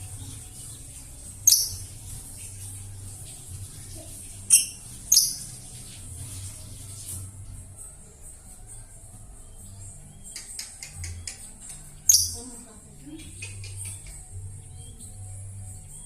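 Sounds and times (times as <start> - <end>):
faint high chatter: 0.0 - 15.3
lovebird high chirps: 1.4 - 2.0, 4.5 - 5.6, 12.0 - 12.5.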